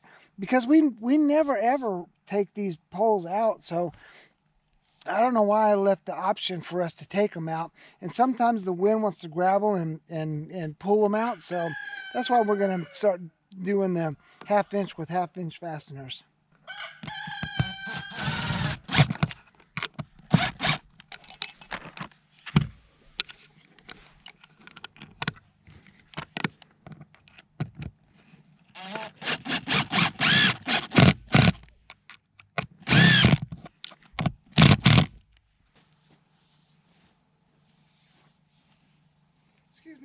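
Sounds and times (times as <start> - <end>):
knocks and scraping of pipe and wood: 17.1 - 28.8
cordless power driver: 17.4 - 21.2, 28.8 - 31.7, 32.6 - 33.6, 34.2 - 35.2.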